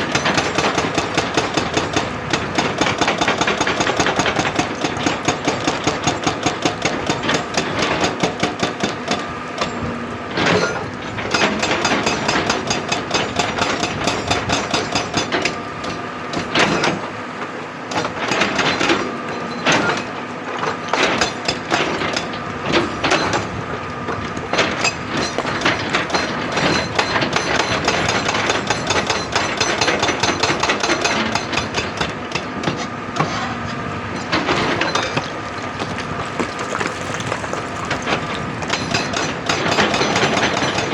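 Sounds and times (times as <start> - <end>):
hydraulic rock breaker hammering: 0.0 - 9.3, 11.3 - 16.0, 24.6 - 32.5, 34.3 - 40.9.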